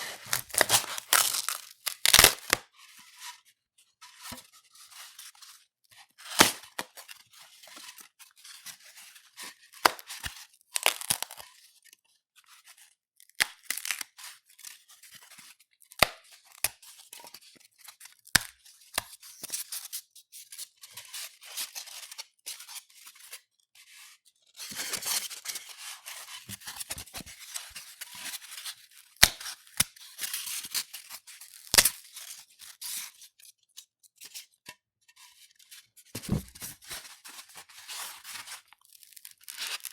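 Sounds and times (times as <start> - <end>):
styrofoam rubbing and squeaking: 0.0 - 2.5, 36.2 - 36.9
styrofoam snapping: 0.0 - 2.6, 10.8 - 11.3.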